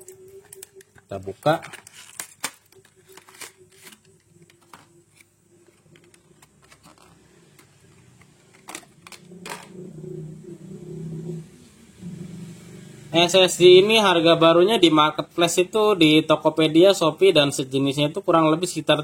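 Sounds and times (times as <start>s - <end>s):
packaging being opened: 0.0s - 9.7s
low hum: 8.5s - 13.2s.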